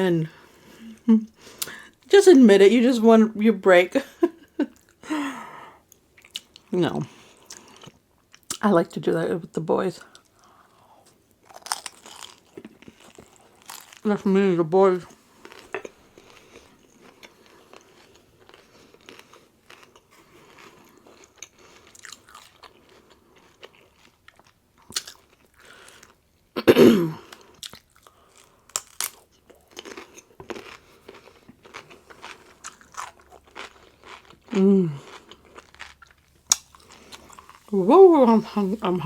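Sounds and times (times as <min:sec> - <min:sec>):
crunching and chewing crisp food: 0:05.9 - 0:08.6, 0:10.0 - 0:14.3, 0:15.0 - 0:26.6, 0:27.2 - 0:37.8.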